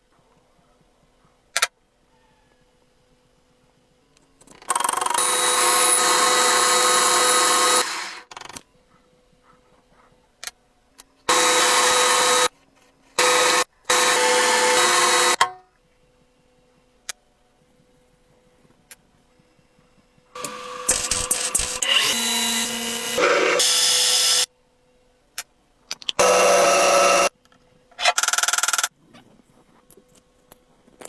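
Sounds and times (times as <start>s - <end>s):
power tool running: 4.7s - 8.3s, 11.3s - 12.5s, 13.2s - 15.4s, 20.4s - 24.5s, 26.2s - 27.3s.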